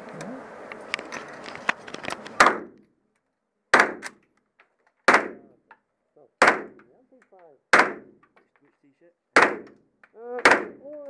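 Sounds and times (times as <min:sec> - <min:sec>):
rifle shots: 0:02.4 - 0:02.8, 0:03.7 - 0:04.2, 0:05.1 - 0:05.5, 0:06.4 - 0:06.8, 0:07.7 - 0:08.2, 0:09.4 - 0:09.7, 0:10.4 - 0:10.8.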